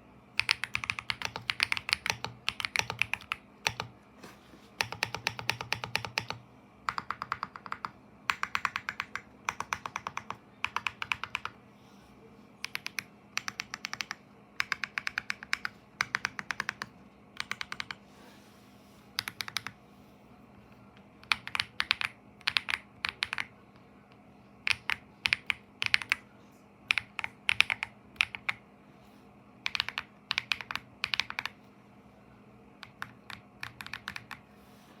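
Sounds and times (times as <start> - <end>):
mechanical keyboard typing: 0.4 - 3.9, 4.8 - 11.6, 12.6 - 18.0, 19.2 - 19.8, 21.2 - 23.5, 24.6 - 26.2, 26.9 - 28.6, 29.6 - 31.6, 32.8 - 34.4.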